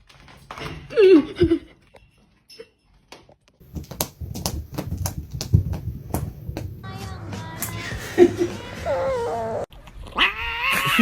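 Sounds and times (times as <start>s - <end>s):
sharp taps and clicks: 3.6s - 6.9s
low thumps: 3.6s - 7.0s.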